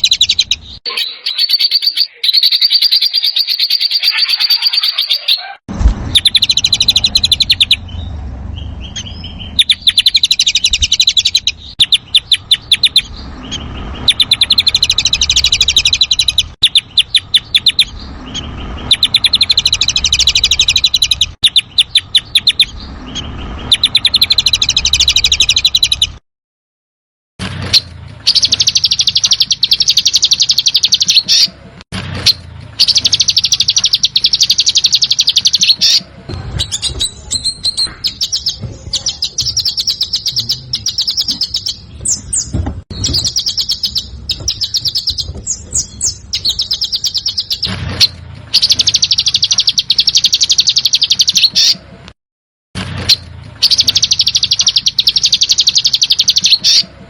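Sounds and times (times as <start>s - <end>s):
bird chirps: 0.0s - 26.2s, 27.6s - 31.6s, 32.2s - 51.8s, 53.0s - 56.9s
songbird harsh rattling trills: 6.2s - 26.2s, 28.2s - 31.5s, 32.8s - 36.0s, 36.7s - 51.7s, 53.6s - 56.8s.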